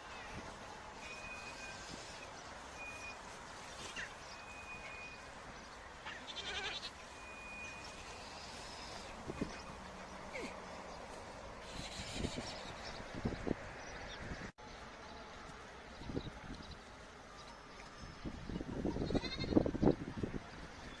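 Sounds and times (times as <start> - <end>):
steady outdoor hiss: 0.0 - 21.0
sheep or goats bleating: 6.0 - 7.0, 19.0 - 19.6.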